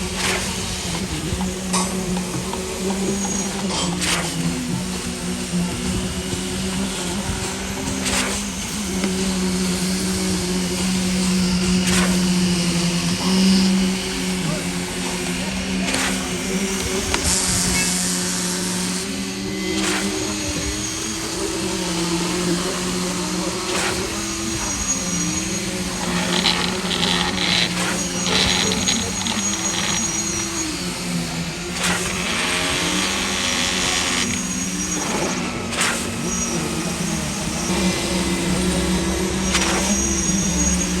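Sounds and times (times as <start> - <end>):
rattling and scraping: 24.9 - 30.6.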